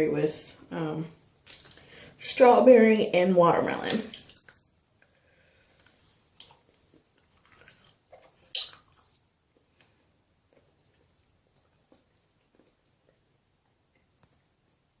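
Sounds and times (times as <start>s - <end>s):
person chewing candy: 4.3s - 14.6s
mouth smacks: 7.4s - 9.2s.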